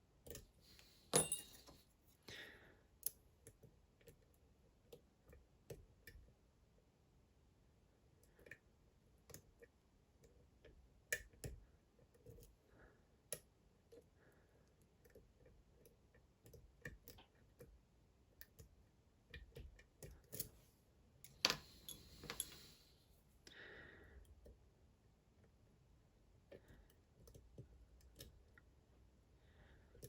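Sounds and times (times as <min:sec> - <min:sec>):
lock pick scraping: 0:21.3 - 0:22.8.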